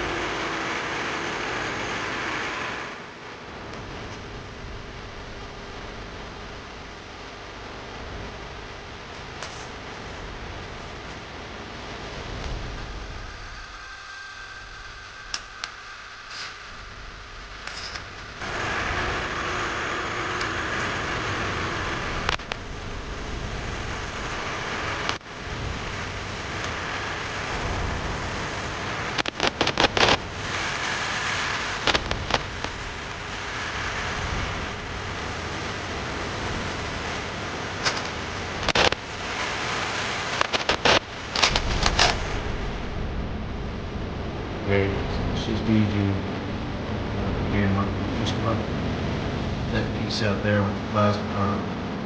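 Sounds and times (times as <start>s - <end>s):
hissing power tool: 0.0s - 3.2s, 12.1s - 42.8s
sharp clicks and knocks: 37.8s - 39.0s, 40.4s - 42.2s.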